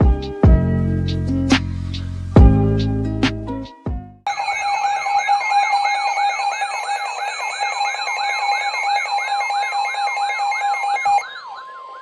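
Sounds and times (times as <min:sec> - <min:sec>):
piercing high alert tone: 0:04.3 - 0:12.0
rising siren-like sweep: 0:04.3 - 0:12.0.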